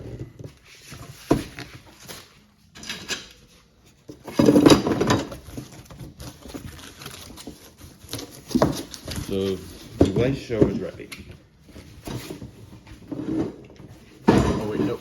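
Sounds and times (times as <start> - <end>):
items clattering in box: 4.1 - 11.0, 12.0 - 15.0.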